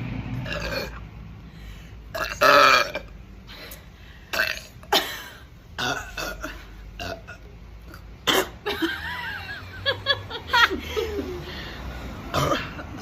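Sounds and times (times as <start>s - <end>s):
woman burping: 0.4s - 1.0s, 2.1s - 3.1s, 4.3s - 9.0s, 12.3s - 13.0s.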